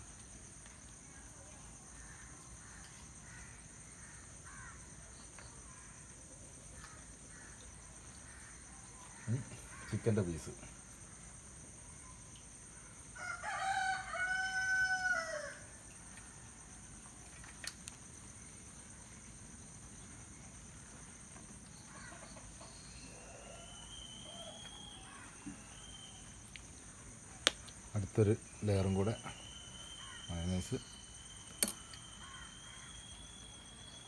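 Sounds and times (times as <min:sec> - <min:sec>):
rooster crowing: 0:13.2 - 0:15.7, 0:23.0 - 0:26.3
steady high hiss: 0:22.8 - 0:34.0
thin high bird call: 0:23.0 - 0:26.7, 0:28.6 - 0:34.0.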